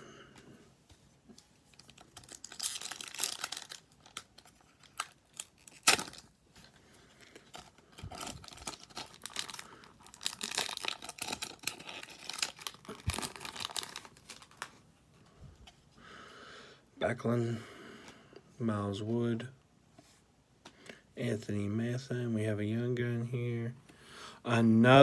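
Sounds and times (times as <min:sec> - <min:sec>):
wrapper tearing and crinkling: 0:01.7 - 0:14.8.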